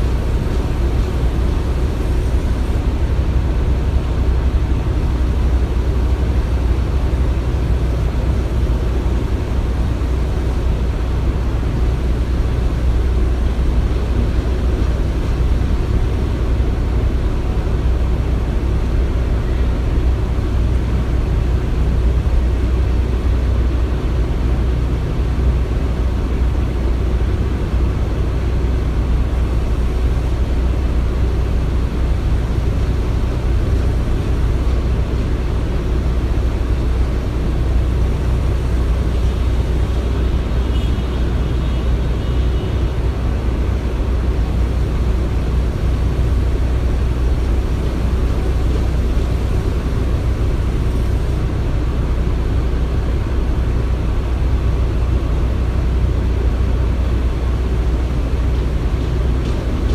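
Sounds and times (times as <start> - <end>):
heavy machinery rumble: 0.0 - 59.9.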